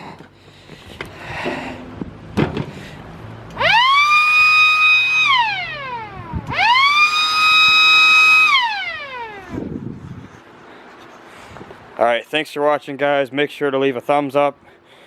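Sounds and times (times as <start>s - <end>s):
siren wailing: 3.5s - 9.7s.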